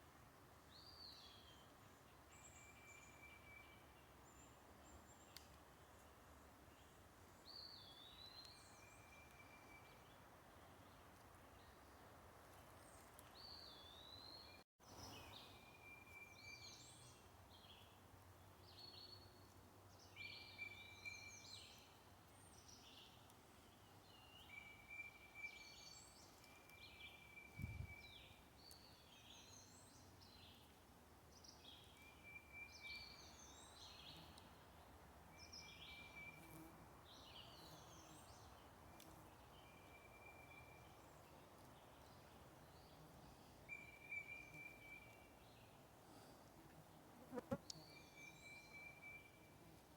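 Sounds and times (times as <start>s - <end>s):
faint steady hiss: 14.8s - 49.9s.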